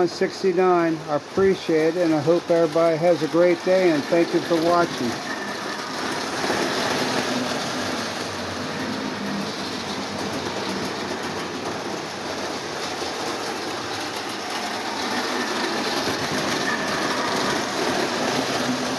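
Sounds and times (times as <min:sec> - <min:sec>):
wheels clattering over rails: 0:00.0 - 0:18.9
toy train motor hum: 0:01.5 - 0:18.9.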